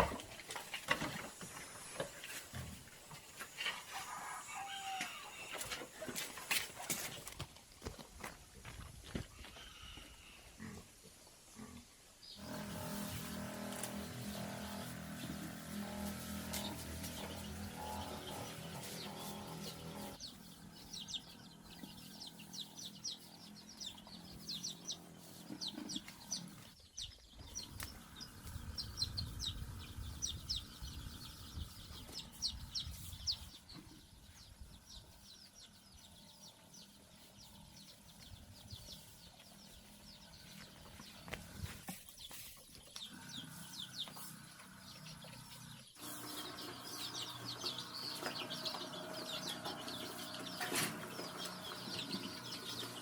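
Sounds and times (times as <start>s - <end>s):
birds chirping and peeping: 0.0s - 8.0s, 9.2s - 53.0s
chickens clucking: 10.6s - 53.0s.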